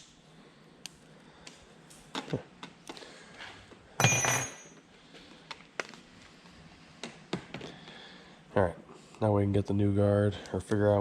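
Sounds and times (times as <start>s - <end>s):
hand tools clicking and knocking: 4.0s - 4.8s.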